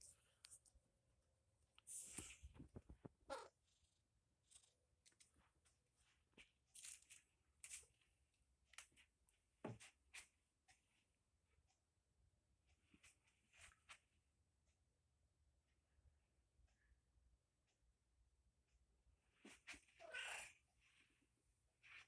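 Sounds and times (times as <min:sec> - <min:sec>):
soft rustles and clicks: 0:01.8 - 0:03.3.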